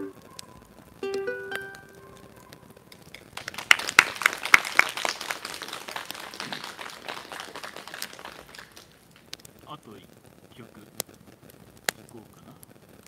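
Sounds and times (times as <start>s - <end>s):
ukulele chord ringing: 0.0s - 2.6s
small group clapping: 3.1s - 9.4s.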